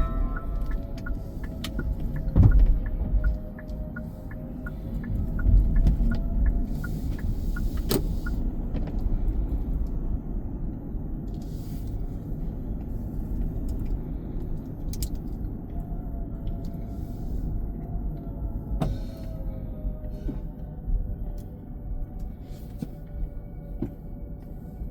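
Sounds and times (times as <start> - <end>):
car road and engine rumble: 0.0 - 24.9
low thump: 2.3 - 2.9.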